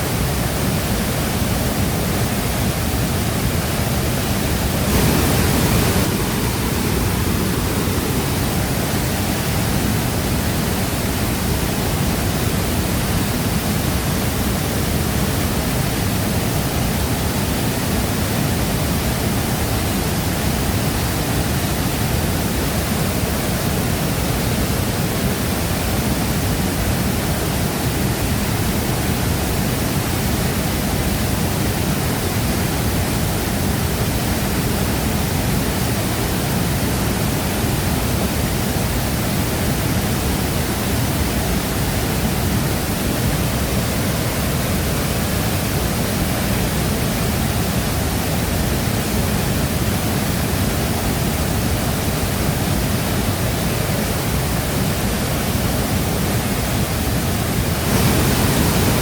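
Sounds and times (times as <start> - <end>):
waterfall roaring: 0.0 - 59.0.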